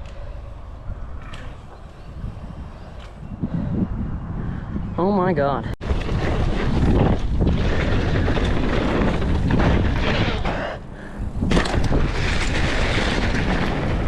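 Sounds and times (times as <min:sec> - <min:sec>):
wind buffeting microphone: 0:00.0 - 0:14.0
bike rattling and knocking: 0:05.8 - 0:10.8, 0:11.4 - 0:14.0.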